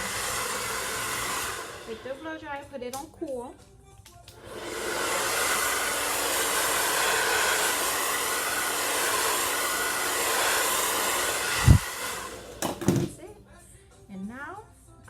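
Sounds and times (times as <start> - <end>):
blow dryer running: 0.0 - 2.3, 4.4 - 13.1.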